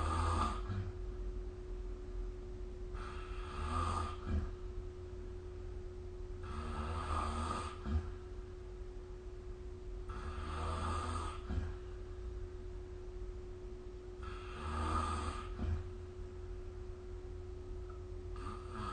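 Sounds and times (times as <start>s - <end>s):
person snoring with clicks: 0.0s - 0.9s, 3.0s - 4.6s, 6.4s - 8.2s, 10.1s - 11.8s, 14.2s - 15.9s, 17.9s - 18.9s.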